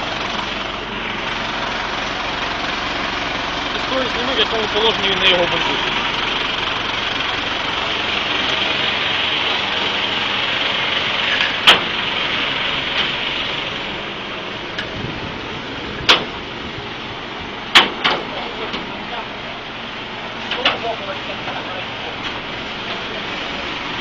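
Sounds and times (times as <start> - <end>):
traffic noise: 0.0 - 24.0
vehicle engine: 0.0 - 24.0
sharp knocks or clanks: 11.4 - 12.0, 16.0 - 16.3, 17.7 - 18.9.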